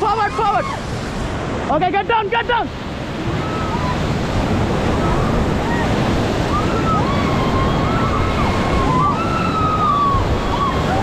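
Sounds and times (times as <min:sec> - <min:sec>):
whitewater rapids rushing: 0:00.0 - 0:11.0
wind on microphone: 0:02.8 - 0:11.0.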